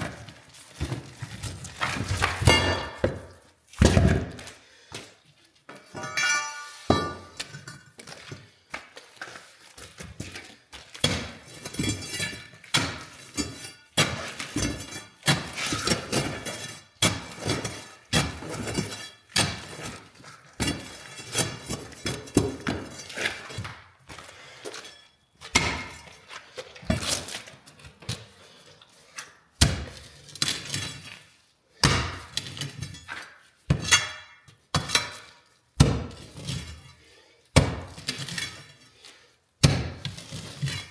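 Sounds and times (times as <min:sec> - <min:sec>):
concrete breaking and crashing: 0:00.0 - 0:04.6, 0:05.8 - 0:07.9, 0:10.1 - 0:27.5.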